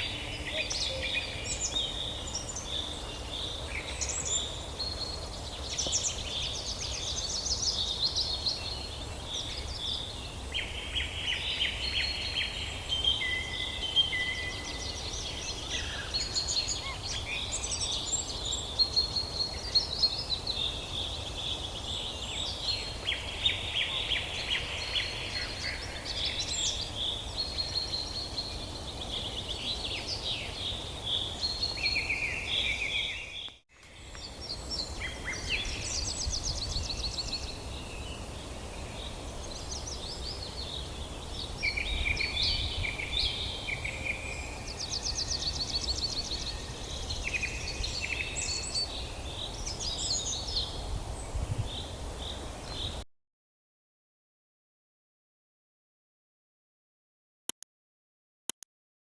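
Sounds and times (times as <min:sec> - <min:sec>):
songbirds singing: 0:00.0 - 0:53.0.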